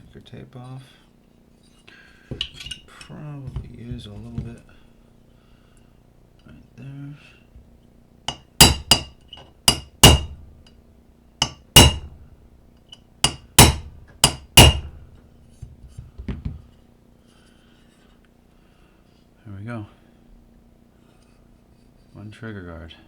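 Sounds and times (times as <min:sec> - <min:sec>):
hammer striking metal punch: 0:08.3 - 0:10.6, 0:11.4 - 0:12.3, 0:13.2 - 0:15.1.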